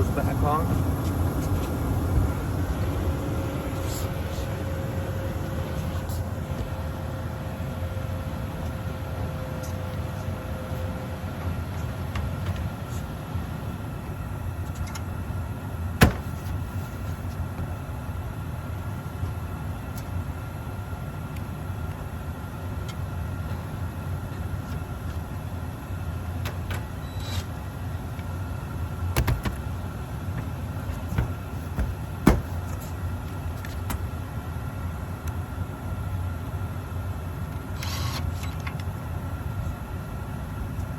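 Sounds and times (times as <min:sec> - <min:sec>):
faint steady whine: 0:00.0 - 0:40.9
hvac unit droning: 0:00.0 - 0:40.9.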